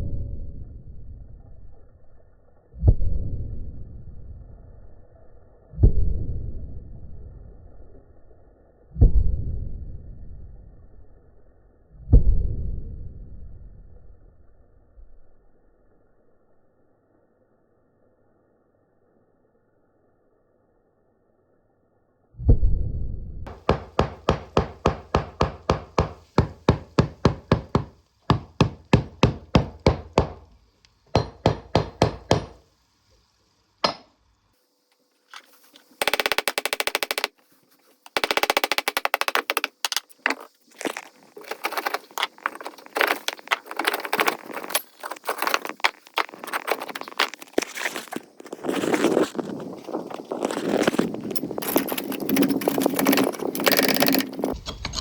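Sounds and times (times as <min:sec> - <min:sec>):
hammer striking masonry: 0:23.5 - 0:32.6, 0:33.8 - 0:34.2
knocking and scraping: 0:23.5 - 0:32.6, 0:35.3 - 0:55.0.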